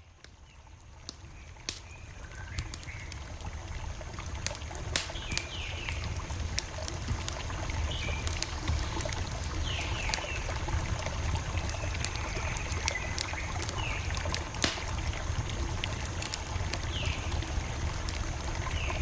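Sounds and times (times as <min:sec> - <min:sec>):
low rumble of burning: 0:00.1 - 0:19.0
campfire crackling and popping: 0:00.2 - 0:19.0.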